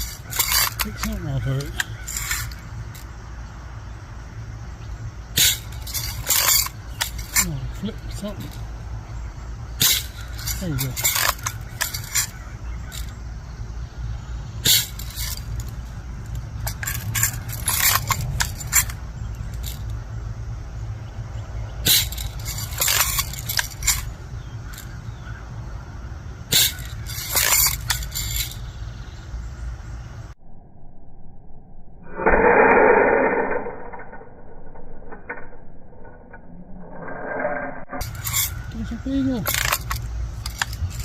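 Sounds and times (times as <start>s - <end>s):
low rumble: 28.7s - 38.6s.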